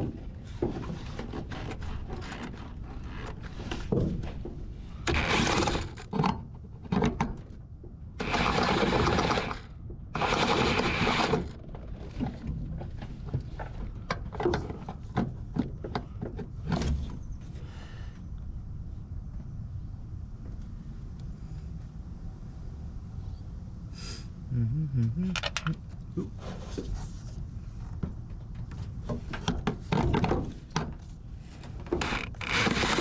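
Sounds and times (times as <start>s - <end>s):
small motorised tool running: 5.1s - 6.0s, 8.2s - 11.5s
knocks and clicks: 25.3s - 25.8s.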